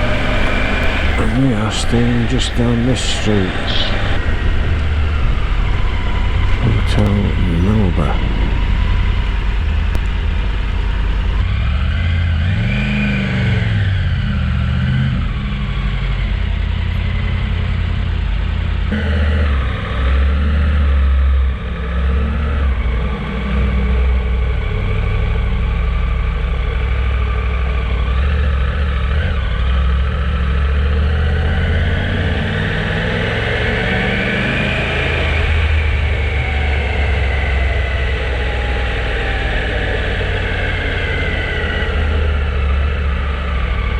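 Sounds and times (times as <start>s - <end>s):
motorcycle engine revving: 3.5s - 11.4s.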